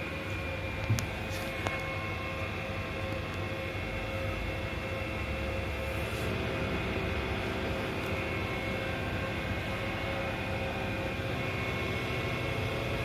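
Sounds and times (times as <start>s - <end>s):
computer fan whirring: 0.0s - 13.0s.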